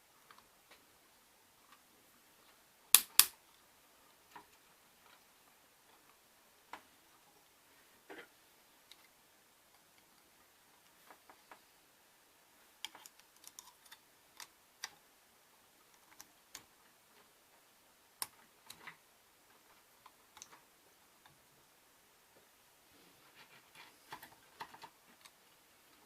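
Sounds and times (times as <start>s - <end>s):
plastic parts clicking: 12.8s - 15.0s.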